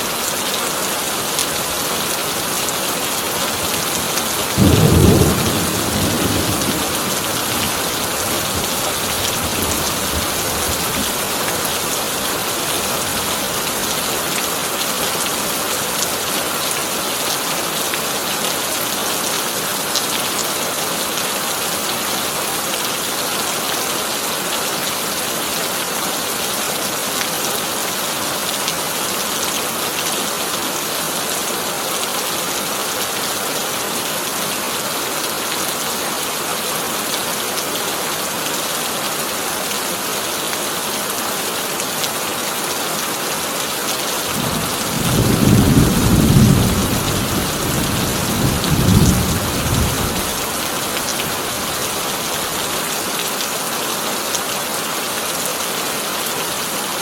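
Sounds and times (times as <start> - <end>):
heavy rain on a tin roof: 0.0 - 57.0
deep roll of thunder: 4.6 - 7.8.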